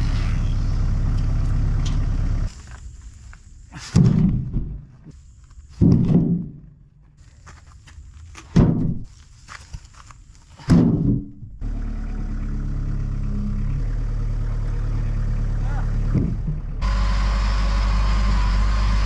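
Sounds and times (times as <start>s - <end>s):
engine running: 0.0s - 2.9s, 11.5s - 19.0s
heavy thuds: 3.8s - 5.1s, 5.7s - 6.8s, 8.4s - 9.1s, 10.6s - 11.6s.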